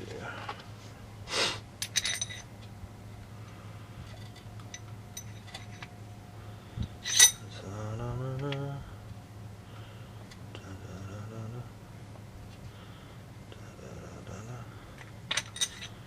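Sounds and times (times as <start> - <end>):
short low hum: 0.2 - 16.0
metal parts clinking: 1.8 - 2.5, 4.1 - 5.9, 7.0 - 7.6, 15.0 - 16.0.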